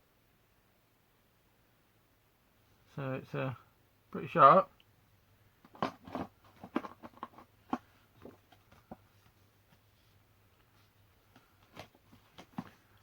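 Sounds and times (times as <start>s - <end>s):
faint clicks and taps: 5.6s - 13.0s.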